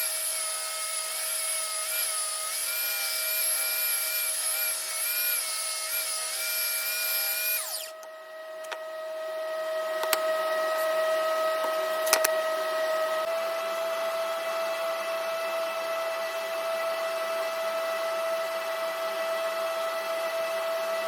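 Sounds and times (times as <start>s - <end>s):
power tool motor whining: 0.0s - 8.9s
steady motor hum: 0.0s - 21.0s.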